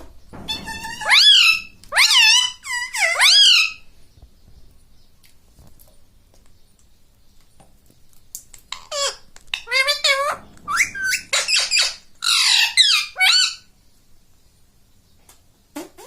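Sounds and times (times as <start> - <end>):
parrot calling: 0.5 - 3.9, 8.7 - 13.7.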